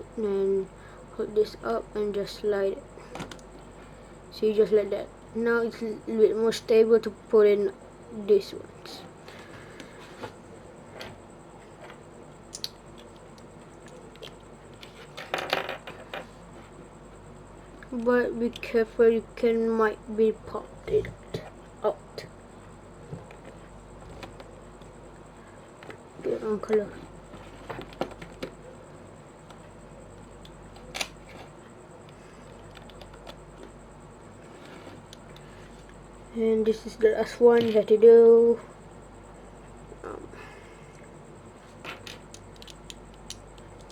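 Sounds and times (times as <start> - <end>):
plastic cube pieces clicking: 42.0 - 43.9.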